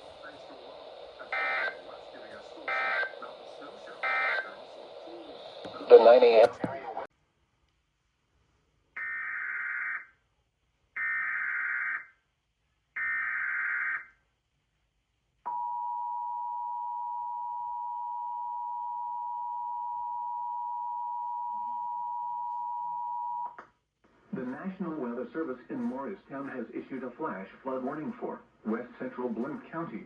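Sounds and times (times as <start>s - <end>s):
digital data tone bursts: 1.1s - 6.5s.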